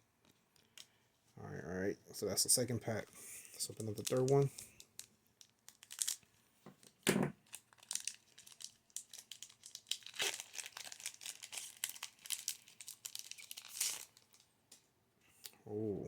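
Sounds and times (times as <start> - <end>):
foil wrapper crinkling and tearing: 3.6 - 6.3, 6.9 - 14.5.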